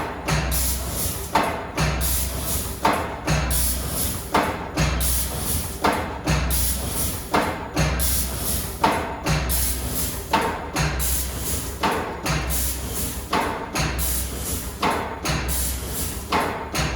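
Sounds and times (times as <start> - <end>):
sharp machine knock: 0.0 - 16.9.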